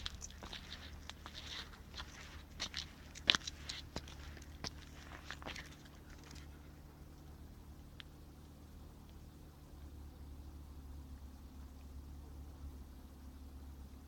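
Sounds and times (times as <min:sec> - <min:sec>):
footsteps crunching on forest litter: 0:00.0 - 0:06.6.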